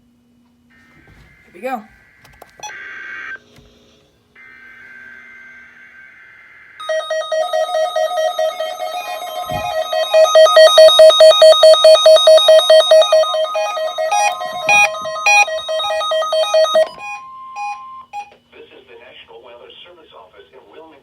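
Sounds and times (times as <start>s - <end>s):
steady warning alarm tone: 4.3s - 18.4s
weather radio alert beeping: 6.8s - 18.3s.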